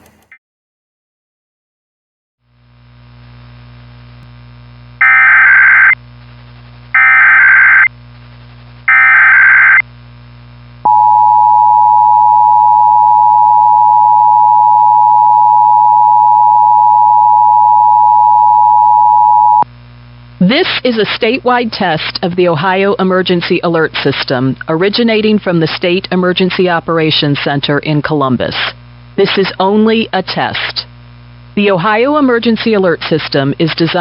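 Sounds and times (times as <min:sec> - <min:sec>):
low receiver hum: 0:00.0 - 0:00.4, 0:02.5 - 0:34.0
data tone bursts: 0:08.9 - 0:09.8, 0:10.9 - 0:19.6.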